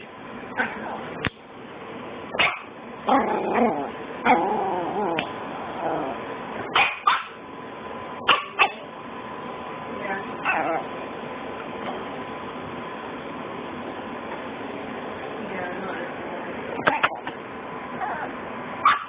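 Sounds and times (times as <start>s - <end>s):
dog barking: 2.4s - 2.7s, 6.7s - 7.4s, 8.3s - 8.8s.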